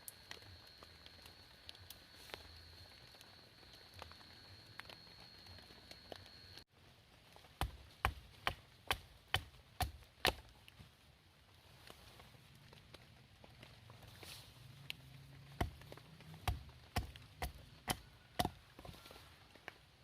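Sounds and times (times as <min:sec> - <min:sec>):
axe chopping wood: 0:07.6 - 0:10.4, 0:15.6 - 0:18.6.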